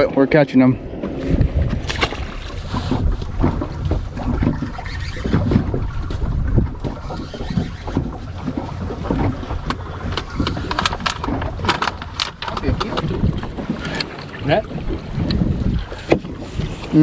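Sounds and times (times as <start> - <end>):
wind buffeting microphone: 0.0 - 17.0
knocks and clatter on boat deck: 0.9 - 17.0.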